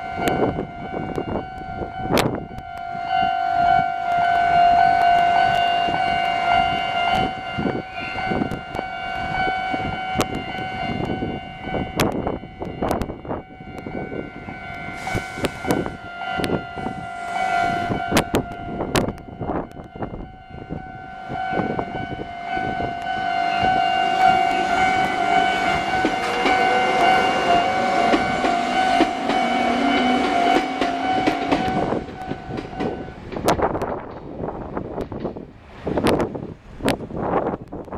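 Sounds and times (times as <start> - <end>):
level crossing warning bells: 0.0 - 33.2
rising whine: 0.0 - 33.2
train wheels clacking over joints: 24.3 - 34.4.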